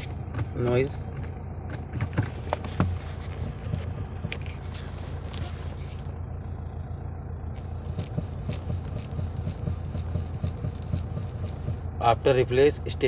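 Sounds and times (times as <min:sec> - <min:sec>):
steering shaft clicking and knocking: 0:00.0 - 0:05.5, 0:07.5 - 0:12.3
car engine humming: 0:00.0 - 0:13.0.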